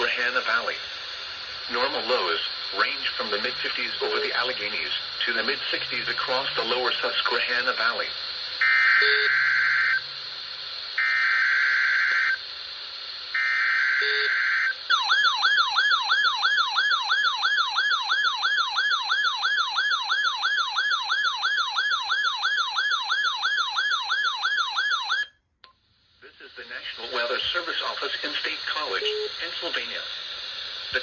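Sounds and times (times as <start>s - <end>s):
buzzy digital header bursts: 10.9s - 12.4s.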